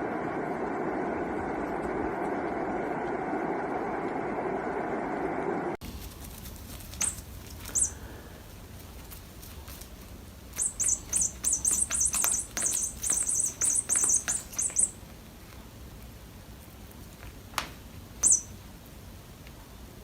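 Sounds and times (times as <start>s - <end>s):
high-pitched squeaks: 7.0s - 8.0s, 10.6s - 15.0s.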